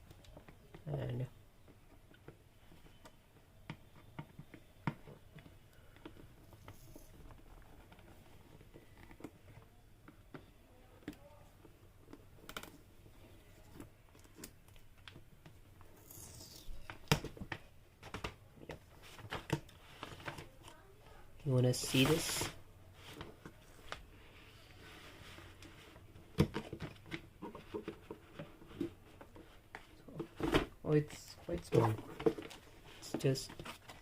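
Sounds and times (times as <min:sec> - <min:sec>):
faint clicks and scrapes: 0:01.6 - 0:17.1, 0:18.0 - 0:21.2, 0:22.3 - 0:30.6.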